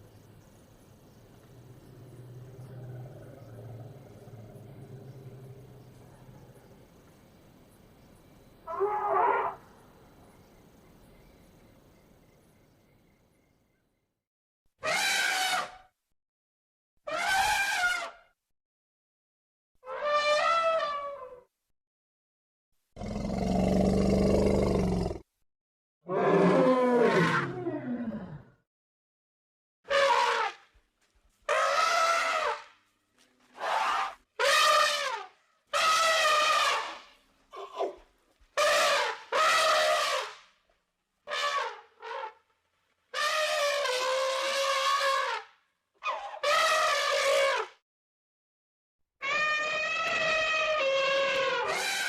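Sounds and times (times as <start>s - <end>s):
elephant low rumbling roar: 1.6s - 6.8s
elephant trumpeting: 33.6s - 38.0s, 38.6s - 40.4s, 43.2s - 45.4s, 49.2s - 52.0s.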